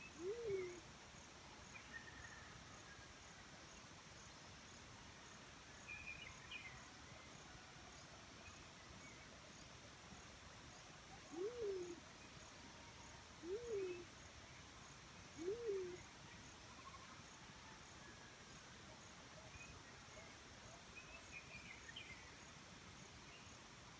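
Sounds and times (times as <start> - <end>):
dove hooting: 0.1 - 0.8, 11.2 - 12.1, 13.4 - 14.1, 15.4 - 16.1
insects chirping: 13.4 - 17.1.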